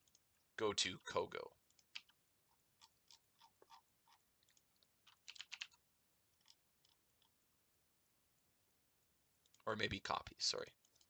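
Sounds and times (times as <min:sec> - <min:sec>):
faint keyboard keystrokes: 0:04.4 - 0:05.8.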